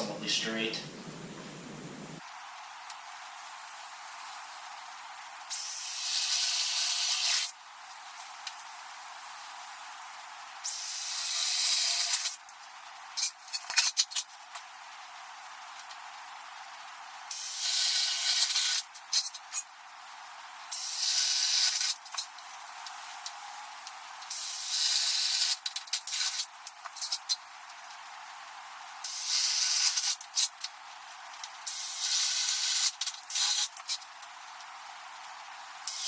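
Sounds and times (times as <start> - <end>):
cordless drill boring wood: 5.5 - 7.5, 10.7 - 12.4, 17.3 - 18.8, 20.8 - 22.0, 31.8 - 33.7.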